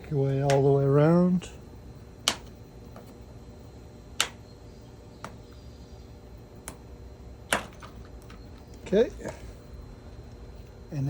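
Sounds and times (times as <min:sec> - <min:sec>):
sharp plastic clicks: 0:02.2 - 0:02.6, 0:04.2 - 0:04.4.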